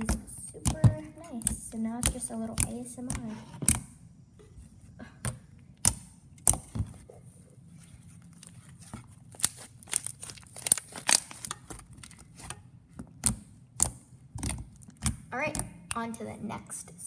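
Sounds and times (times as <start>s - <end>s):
slime squished by hand: 8.0s - 15.3s.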